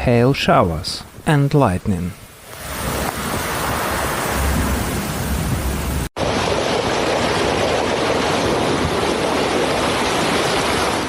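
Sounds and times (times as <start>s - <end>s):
heavy rain rushing: 2.2s - 11.0s.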